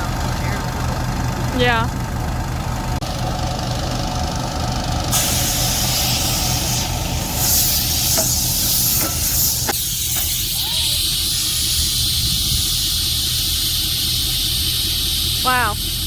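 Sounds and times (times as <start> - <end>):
diesel engine idling: 0.0 - 16.0
air brake hissing: 5.1 - 16.0.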